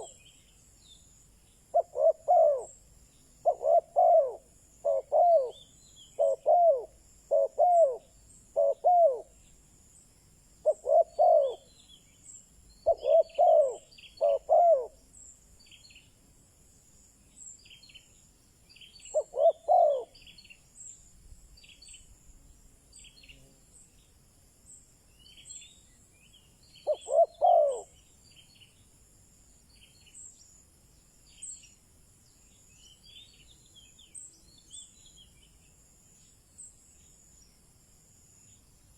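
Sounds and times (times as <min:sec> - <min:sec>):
dove cooing: 0:00.0 - 0:00.2, 0:01.7 - 0:02.8, 0:03.4 - 0:05.6, 0:06.2 - 0:09.3, 0:10.6 - 0:11.7, 0:12.8 - 0:15.0, 0:19.1 - 0:20.2, 0:26.8 - 0:27.9
small birds chirping: 0:00.0 - 0:16.3, 0:17.2 - 0:29.0, 0:29.6 - 0:37.7.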